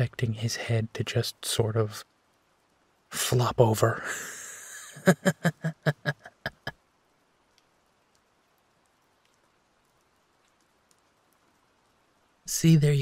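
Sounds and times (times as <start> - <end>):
faint steady rain: 0.0 - 13.0
man chuckling: 4.0 - 6.8.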